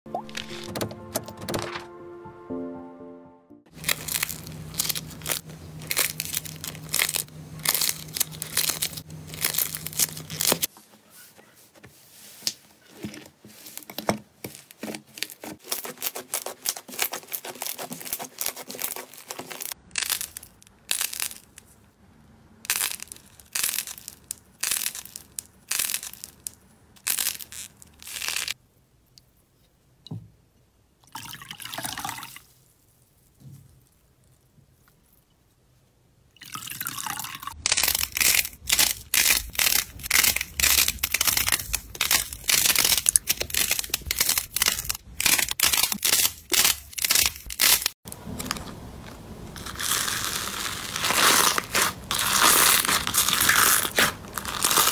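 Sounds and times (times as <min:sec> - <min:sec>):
slime crackling and squelching: 0:03.7 - 0:10.7, 0:12.8 - 0:21.7, 0:22.7 - 0:28.6, 0:37.5 - 0:54.9.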